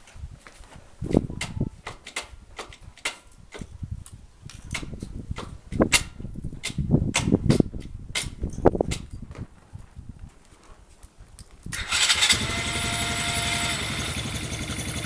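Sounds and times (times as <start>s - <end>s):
sharp clicks and knocks: 1.1s - 9.4s.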